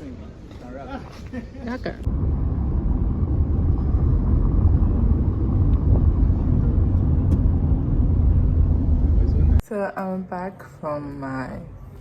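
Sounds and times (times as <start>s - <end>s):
moving car rumble: 2.0s - 9.6s.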